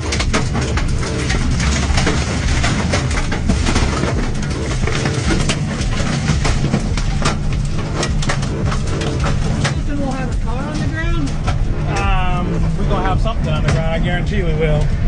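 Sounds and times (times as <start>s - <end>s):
debris knocking on vehicle: 0.0s - 12.0s.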